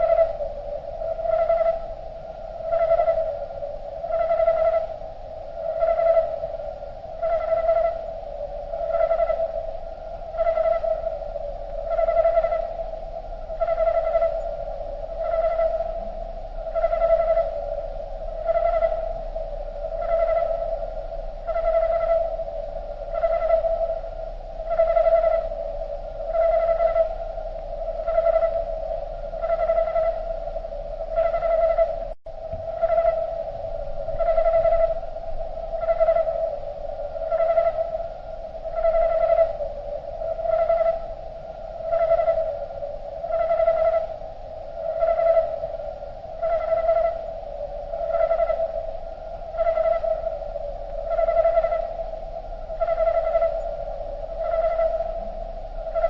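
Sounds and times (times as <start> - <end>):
slowed cricket song: 0.0 - 56.0.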